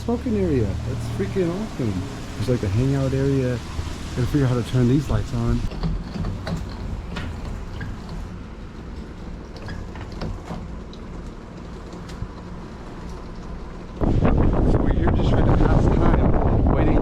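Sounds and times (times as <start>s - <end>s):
rain falling: 0.0s - 5.7s
steady low rumble: 0.0s - 5.7s.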